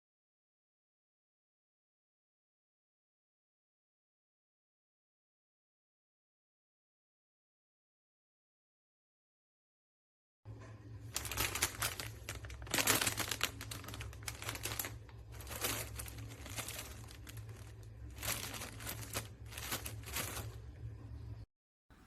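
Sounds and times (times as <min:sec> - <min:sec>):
steady low hum: 0:10.5 - 0:22.0
plastic crinkling and rustling: 0:11.0 - 0:20.8.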